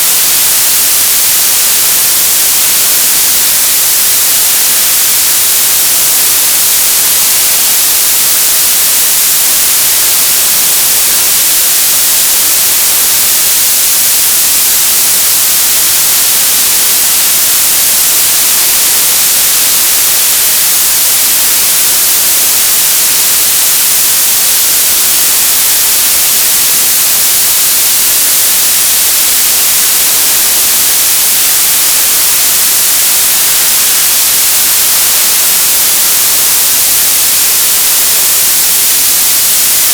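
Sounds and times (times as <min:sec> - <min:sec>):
television static hiss: 0:00.0 - 0:39.9.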